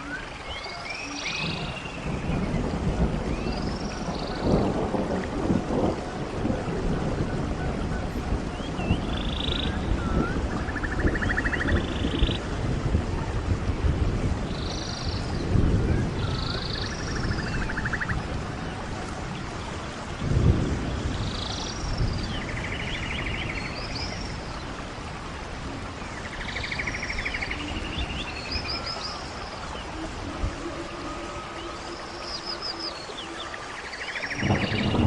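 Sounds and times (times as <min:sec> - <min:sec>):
wind rumble on microphone: 0:00.0 - 0:35.0.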